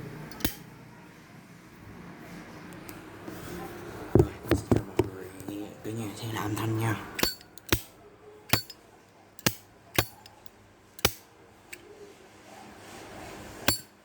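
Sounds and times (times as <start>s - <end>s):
lighter lid clinking: 8.5s - 8.8s, 13.7s - 13.9s.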